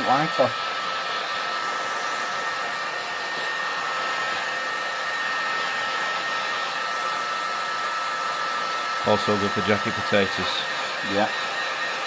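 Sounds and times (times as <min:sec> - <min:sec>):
heat gun blowing air: 0:00.0 - 0:12.0
heat gun fan whine: 0:00.0 - 0:12.0.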